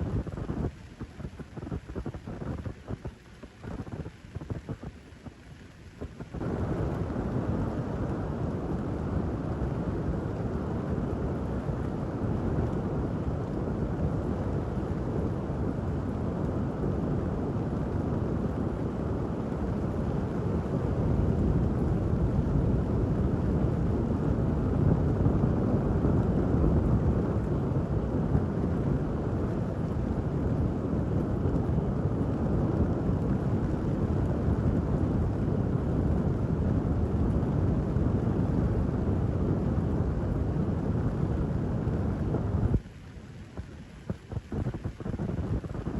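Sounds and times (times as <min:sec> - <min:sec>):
steady rain: 0:00.0 - 0:45.9.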